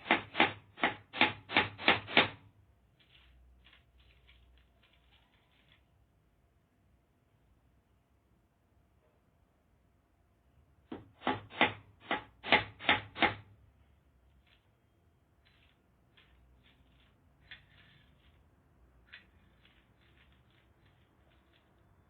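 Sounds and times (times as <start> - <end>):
hammer driving nail into wood: 0.0 - 2.4, 10.9 - 13.5.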